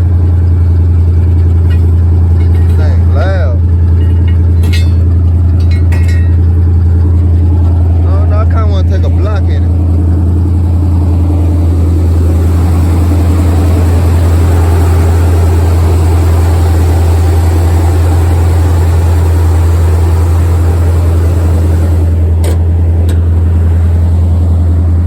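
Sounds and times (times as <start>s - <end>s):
truck exhaust drone: 0.0s - 25.0s.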